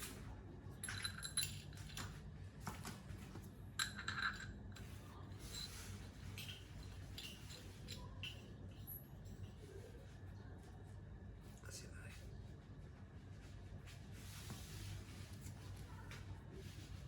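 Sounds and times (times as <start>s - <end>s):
faint low hum: 0.0s - 17.0s
metal parts clinking: 0.8s - 2.1s, 3.8s - 9.0s.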